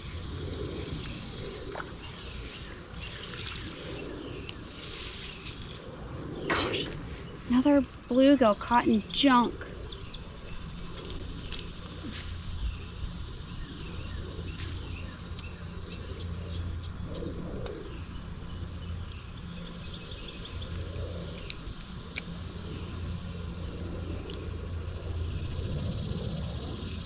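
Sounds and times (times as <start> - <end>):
birds chirping: 0.0 - 27.0
low rumble: 0.0 - 27.0.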